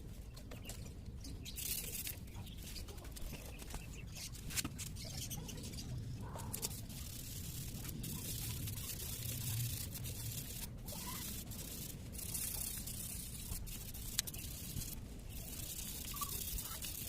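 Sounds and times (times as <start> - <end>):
wire brush scrubbing metal: 6.4 - 17.0.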